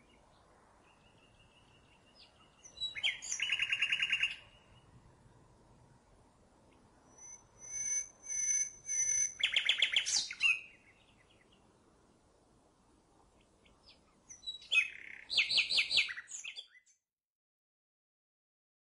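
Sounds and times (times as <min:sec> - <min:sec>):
nightingale singing: 0:00.0 - 0:05.0, 0:06.7 - 0:11.8, 0:13.4 - 0:17.0.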